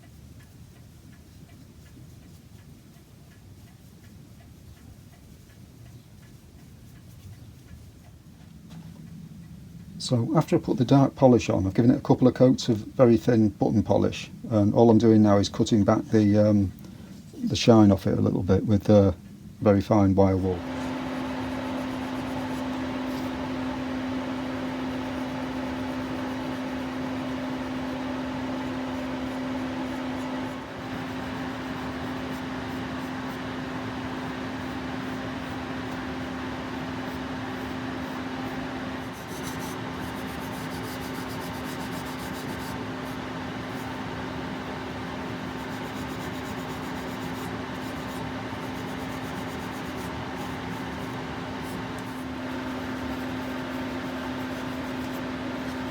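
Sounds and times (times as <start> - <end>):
electric machine hum: 19.1 - 55.9.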